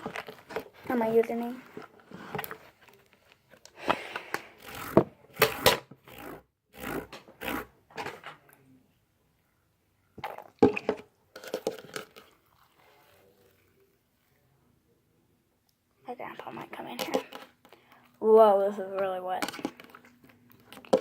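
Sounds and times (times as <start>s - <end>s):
slime squelching and popping: 10.2s - 11.0s.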